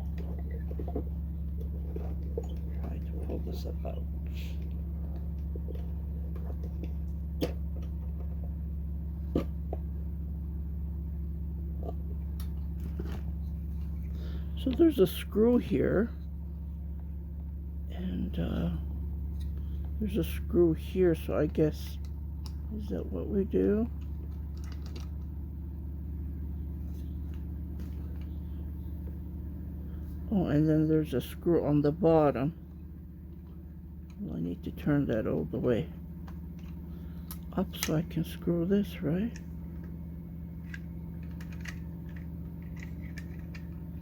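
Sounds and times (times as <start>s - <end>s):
steady low hum: 0.0s - 44.0s
plastic parts clicking and knocking: 24.0s - 25.2s, 40.6s - 44.0s.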